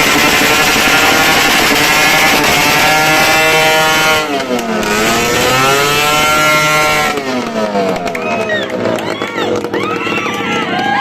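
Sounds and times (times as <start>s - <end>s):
engine revving: 0.0s - 11.0s.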